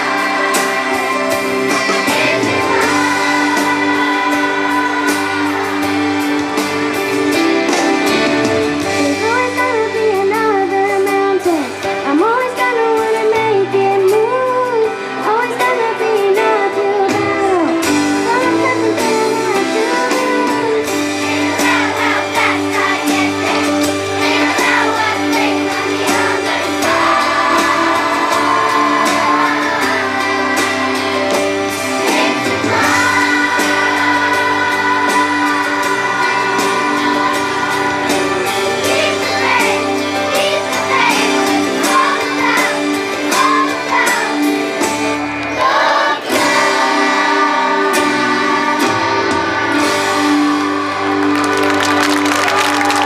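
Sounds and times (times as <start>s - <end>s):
choir singing with accompaniment: 0.0s - 10.1s, 11.4s - 53.0s
applause: 50.7s - 53.0s.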